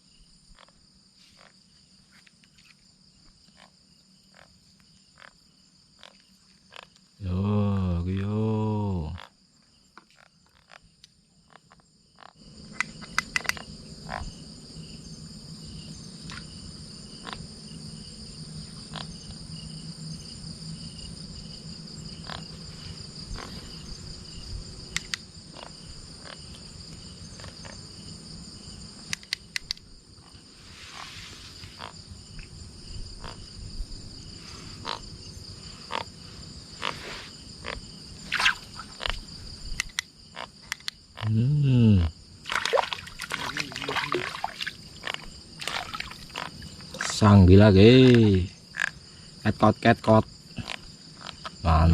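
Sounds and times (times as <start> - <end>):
crickets trilling: 0.0 - 51.9
low frog hum: 3.5 - 9.6, 10.2 - 29.1, 30.1 - 51.9.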